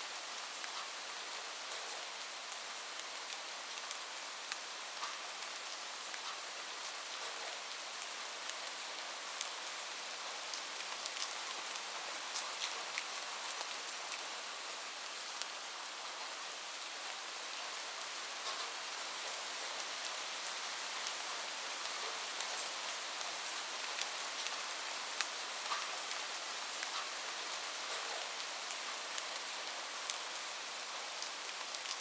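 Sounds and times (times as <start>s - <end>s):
rain falling on a roof: 0.0s - 32.0s.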